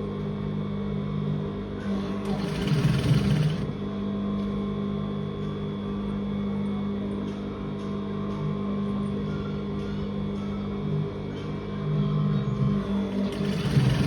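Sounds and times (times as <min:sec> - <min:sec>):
sewing machine running: 0:01.9 - 0:03.8, 0:12.8 - 0:14.0.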